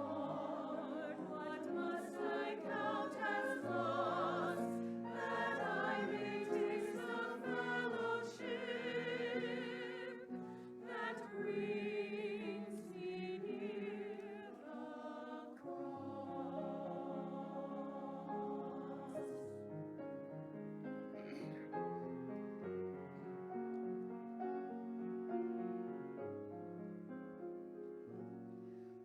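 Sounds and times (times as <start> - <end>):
choir singing: 0.0 - 19.6.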